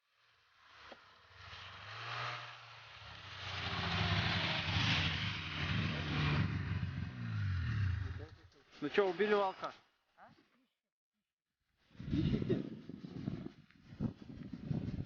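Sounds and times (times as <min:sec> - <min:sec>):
vehicle engine running: 0:00.6 - 0:08.5.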